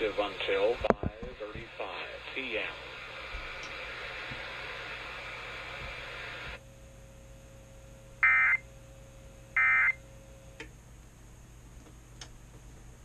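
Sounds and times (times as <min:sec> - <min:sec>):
radio hiss: 0:00.0 - 0:06.6.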